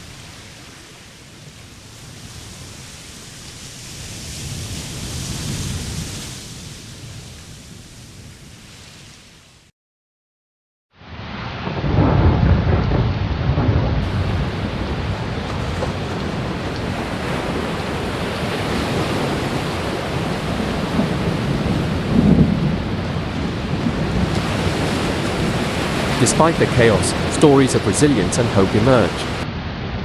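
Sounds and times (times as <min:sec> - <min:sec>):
wind: 0:00.0 - 0:09.7, 0:11.0 - 0:30.0
deep thunder rumbles: 0:14.0 - 0:29.5
heavy rain: 0:14.0 - 0:29.5.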